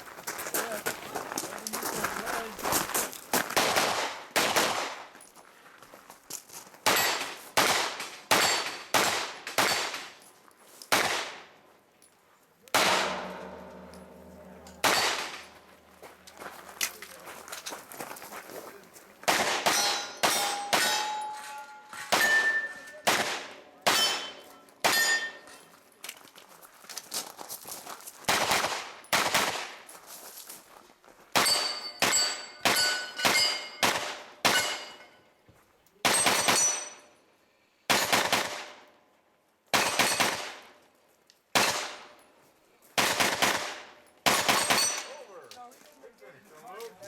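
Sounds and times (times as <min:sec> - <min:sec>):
gunshots: 0:03.5 - 0:05.1, 0:06.8 - 0:10.2, 0:10.9 - 0:11.5, 0:12.7 - 0:15.6, 0:19.2 - 0:21.2, 0:22.0 - 0:25.3, 0:28.3 - 0:29.8, 0:31.4 - 0:35.0, 0:36.0 - 0:37.0, 0:37.9 - 0:38.8, 0:39.7 - 0:40.7, 0:41.6 - 0:42.1, 0:43.0 - 0:45.1
steel targets ringing: 0:12.8 - 0:15.8, 0:19.7 - 0:23.1, 0:23.8 - 0:25.7, 0:31.4 - 0:33.9, 0:34.5 - 0:35.2, 0:36.1 - 0:37.1, 0:44.6 - 0:45.2.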